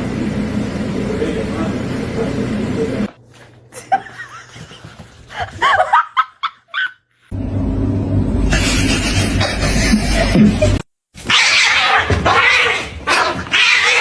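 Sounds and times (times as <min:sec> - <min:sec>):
person laughing: 0:03.7 - 0:07.0, 0:08.5 - 0:10.8
low hum: 0:07.3 - 0:10.8.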